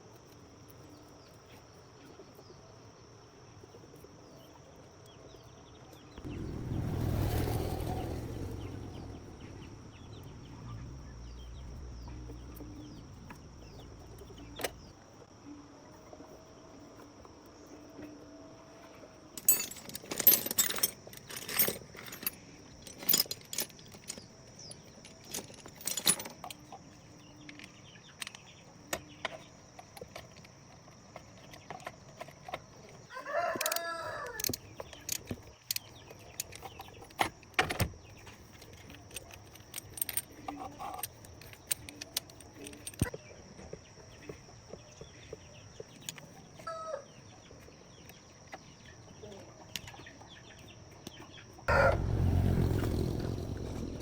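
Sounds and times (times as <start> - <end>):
metallic clinks and knocks: 19.4 - 26.9, 33.6 - 43.1
rooster crowing: 33.1 - 34.4, 46.7 - 47.1, 51.7 - 52.5.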